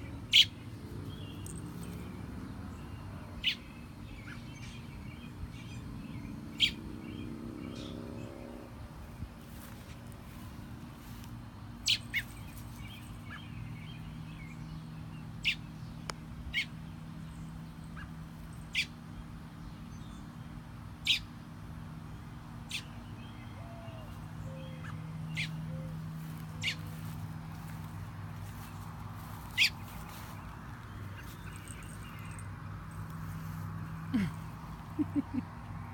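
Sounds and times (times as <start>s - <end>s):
steady low hum: 8.6s - 35.9s
bird chirping: 22.6s - 35.4s
bird twittering: 23.6s - 27.8s, 28.5s - 30.4s.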